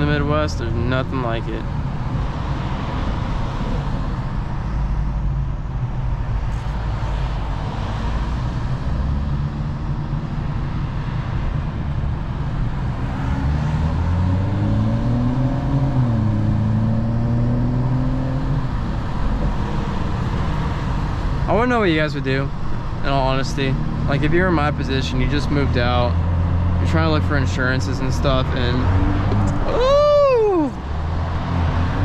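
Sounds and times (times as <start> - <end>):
car engine accelerating: 0.0 - 32.0
road noise: 0.0 - 32.0.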